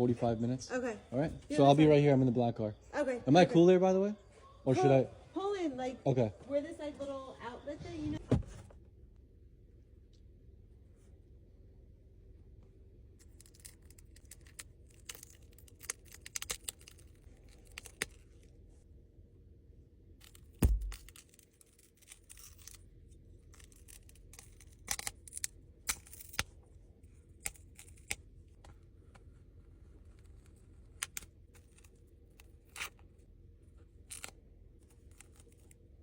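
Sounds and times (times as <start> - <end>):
small objects clicking: 13.2 - 18.3
heavy thump: 20.6 - 21.1.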